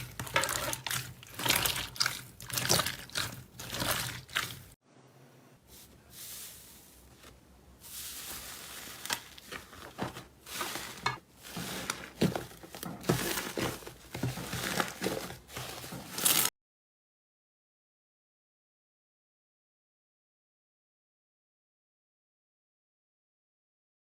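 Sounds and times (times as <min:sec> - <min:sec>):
slime squelching and popping: 0:00.0 - 0:04.8.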